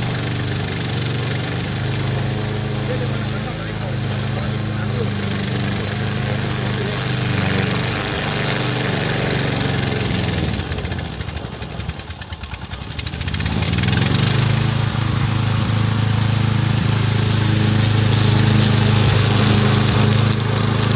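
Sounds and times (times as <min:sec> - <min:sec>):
mower engine running: 0:00.0 - 0:20.9.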